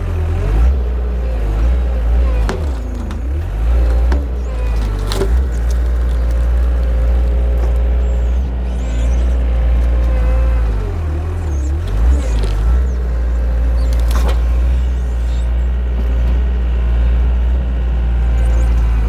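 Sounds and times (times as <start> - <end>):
machine engine rumbling: 0.0 - 19.0
short knocks: 1.8 - 8.0.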